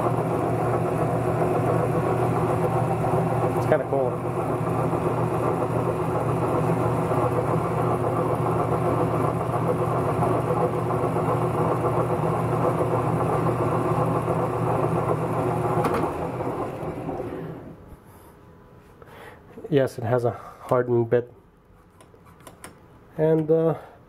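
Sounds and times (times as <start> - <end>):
metal lathe motor humming: 0.0 - 17.7.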